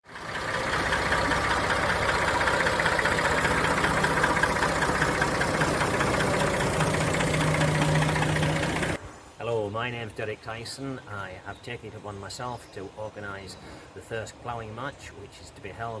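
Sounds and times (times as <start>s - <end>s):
tractor diesel engine running: 0.0s - 9.0s.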